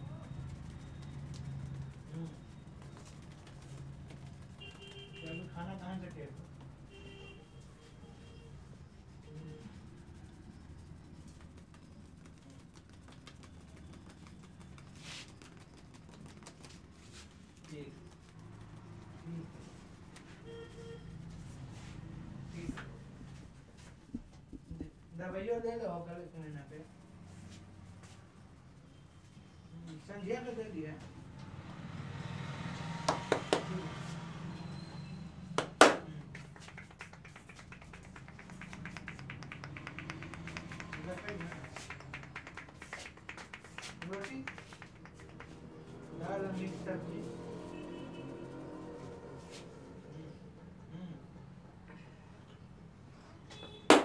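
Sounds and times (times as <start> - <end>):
fingertips tapping on head: 0.0 - 6.9, 8.5 - 20.4, 33.0 - 33.9, 35.6 - 49.8
fingertip taps on head: 35.6 - 45.6.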